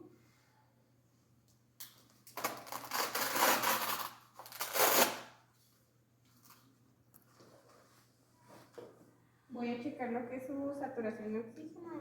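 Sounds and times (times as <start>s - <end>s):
velcro tearing open: 2.3s - 5.4s.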